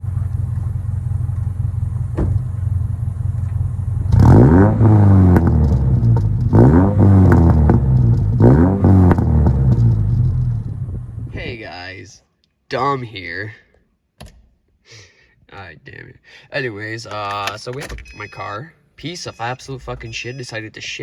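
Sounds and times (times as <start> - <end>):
car engine idling and revving: 0.0 - 11.4.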